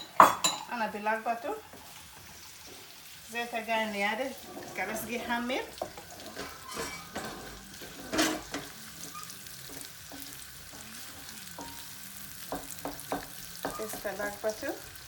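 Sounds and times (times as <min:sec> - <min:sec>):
onion sizzling in oil: 0:00.0 - 0:15.0
utensil knocking against pan: 0:12.5 - 0:14.4.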